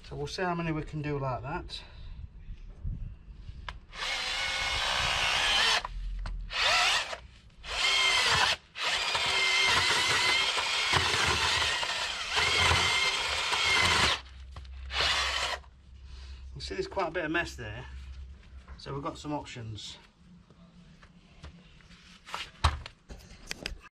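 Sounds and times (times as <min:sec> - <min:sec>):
power drill augering into clay: 0:03.9 - 0:05.9, 0:06.5 - 0:15.7.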